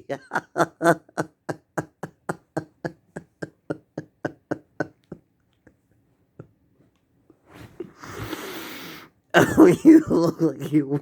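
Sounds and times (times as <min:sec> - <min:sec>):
man laughing: 0:00.0 - 0:05.3, 0:09.4 - 0:11.0.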